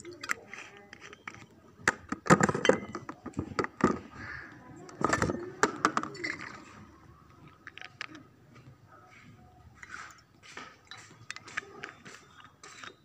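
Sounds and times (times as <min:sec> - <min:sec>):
hard objects knocking and clinking: 0:00.0 - 0:04.1.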